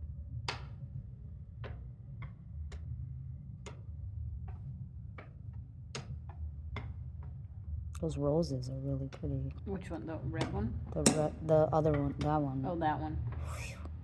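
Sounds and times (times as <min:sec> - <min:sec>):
steady low hum: 0:00.0 - 0:14.0
hard objects clicking and tapping: 0:09.9 - 0:12.6.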